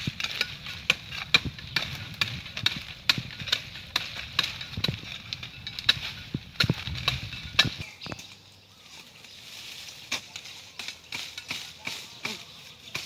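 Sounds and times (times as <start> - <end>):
sharp clicks and knocks: 0.0 - 8.4.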